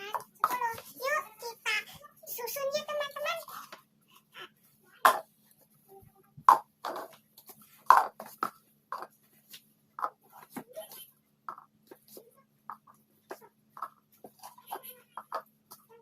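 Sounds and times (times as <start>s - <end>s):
plastic cups clacking: 5.0s - 5.3s, 6.4s - 9.2s, 10.0s - 15.9s.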